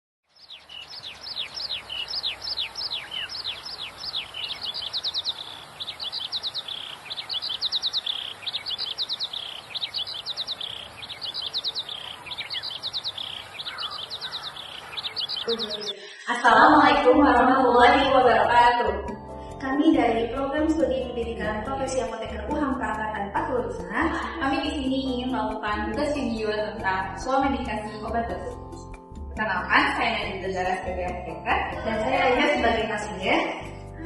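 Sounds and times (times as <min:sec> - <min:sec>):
birds chirping: 0:00.2 - 0:16.3.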